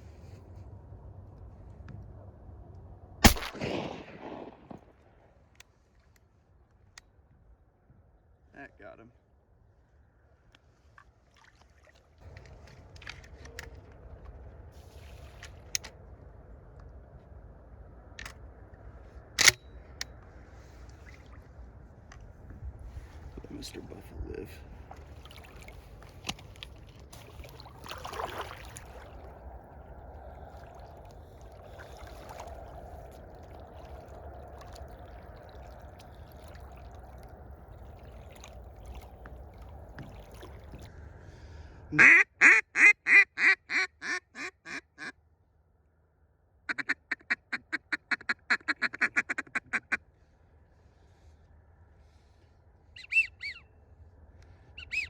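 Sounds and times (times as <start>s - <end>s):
wind: 0.0s - 55.0s
water noise: 3.2s - 5.3s, 10.8s - 16.1s, 19.4s - 41.7s
duck quacking: 41.9s - 45.1s, 46.7s - 50.0s.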